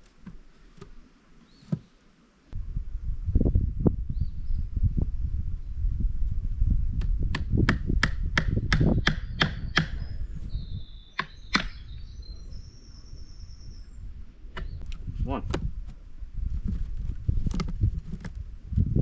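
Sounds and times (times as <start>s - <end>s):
hand tool striking wood: 7.3s - 10.0s, 11.2s - 11.8s.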